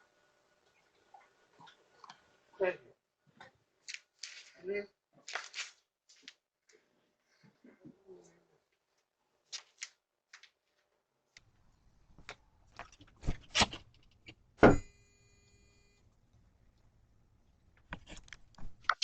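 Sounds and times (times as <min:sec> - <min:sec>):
metallic clang: 0:14.6 - 0:15.6.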